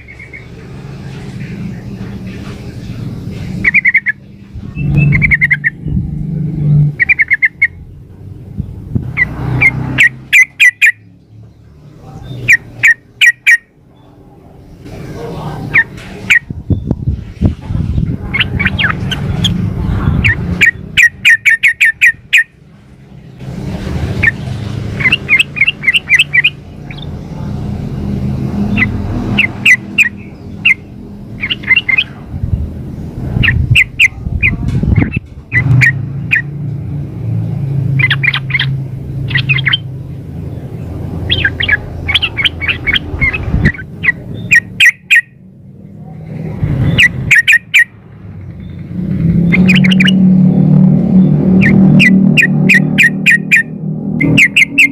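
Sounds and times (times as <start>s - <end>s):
bird chirping: 0.0s - 17.2s, 18.2s - 23.4s, 24.0s - 27.5s, 28.4s - 32.3s, 32.9s - 36.6s, 37.4s - 46.0s, 46.7s - 54.9s
steady low rumble: 13.8s - 21.2s, 24.9s - 44.5s.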